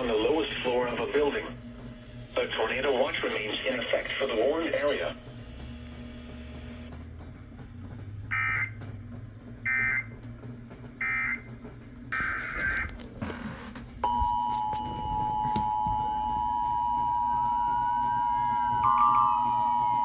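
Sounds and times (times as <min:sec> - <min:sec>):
two-note alert tone: 0:14.1 - 0:20.0.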